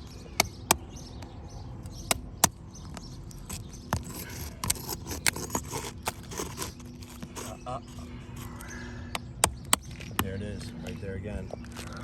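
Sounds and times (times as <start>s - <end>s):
pry tool scraping shingles: 1.8s - 10.4s
sealant strips breaking with clicks: 2.0s - 10.2s.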